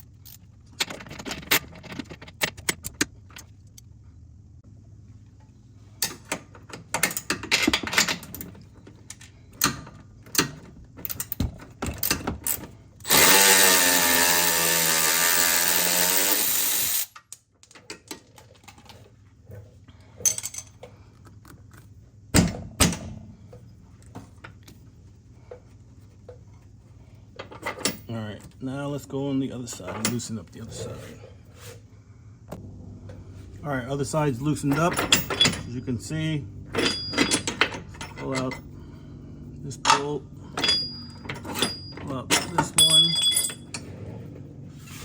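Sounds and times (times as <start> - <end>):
cordless power tool running: 13.0 - 17.1
wrench and socket clanking: 36.7 - 38.7, 39.8 - 43.9.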